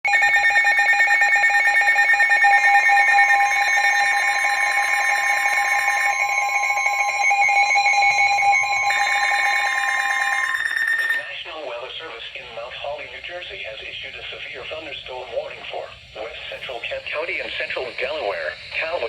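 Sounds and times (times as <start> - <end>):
two-tone alert signal: 0.0 - 11.3.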